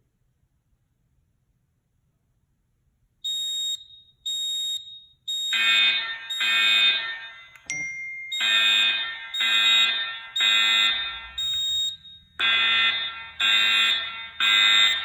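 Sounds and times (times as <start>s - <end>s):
fire alarm horn blasts: 3.3s - 7.7s, 8.3s - 15.0s.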